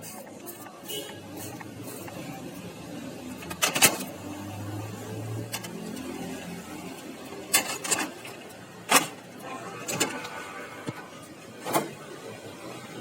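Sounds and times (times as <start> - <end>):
faint photocopier hum: 0.0 - 13.0.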